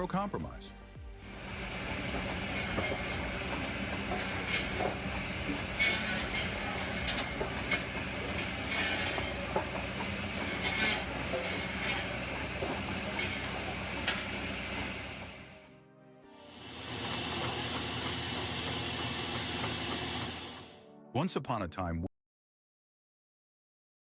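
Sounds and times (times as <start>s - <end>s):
drum saw machine humming: 1.0s - 15.6s, 16.6s - 20.8s.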